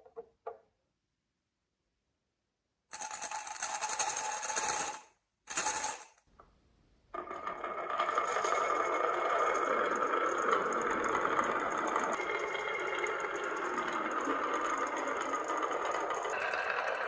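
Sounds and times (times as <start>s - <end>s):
marbles rattling down wooden run: 3.0s - 6.1s, 7.2s - 17.0s
steady whirring rattle: 8.6s - 17.0s.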